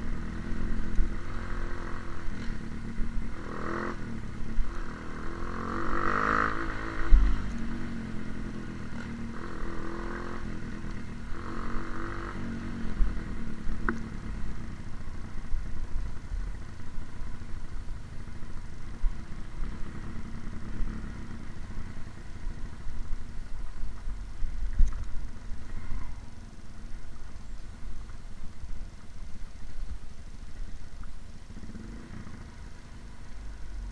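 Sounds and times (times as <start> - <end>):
motorcycle engine revving: 0.0 - 23.8, 31.5 - 33.9.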